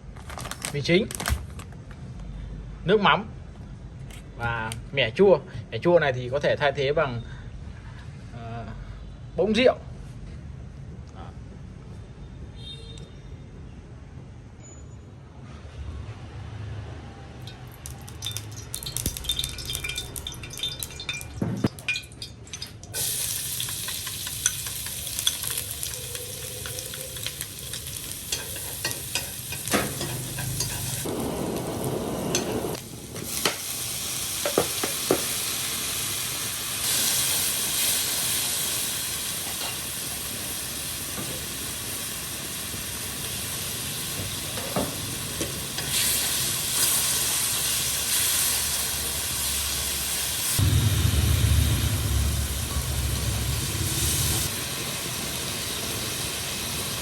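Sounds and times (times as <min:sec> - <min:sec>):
food sizzling in oil: 0:17.5 - 0:57.0.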